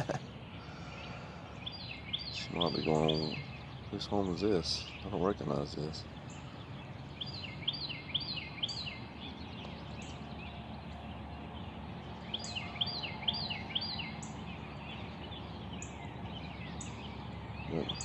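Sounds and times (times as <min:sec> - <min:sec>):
small bird chirping: 0:00.0 - 0:18.0.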